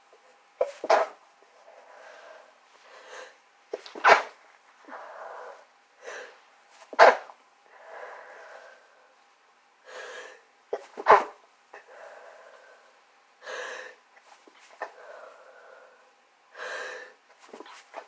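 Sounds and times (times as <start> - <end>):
person sneezing: 0.6 - 1.2, 3.7 - 4.4, 10.7 - 11.4
breathy in-breaths and sniffs: 11.8 - 17.8.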